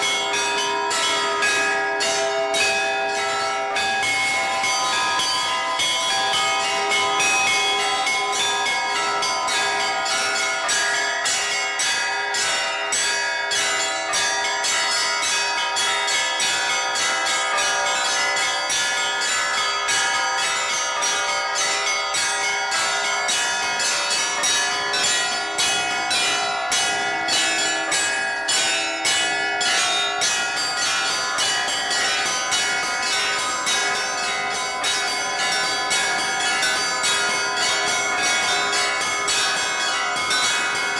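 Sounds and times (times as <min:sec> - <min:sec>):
church bells pealing: 0:00.0 - 0:40.9.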